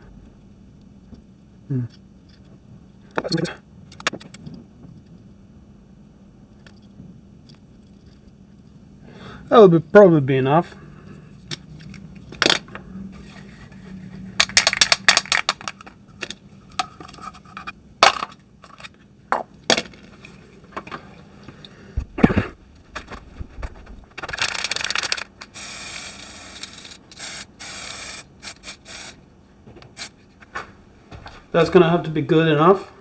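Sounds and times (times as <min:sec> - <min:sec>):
handling noises: 0:10.7 - 0:25.7, 0:29.3 - 0:32.0
rattling clicks: 0:22.9 - 0:25.6
spray paint hissing: 0:24.3 - 0:29.2, 0:29.9 - 0:30.2.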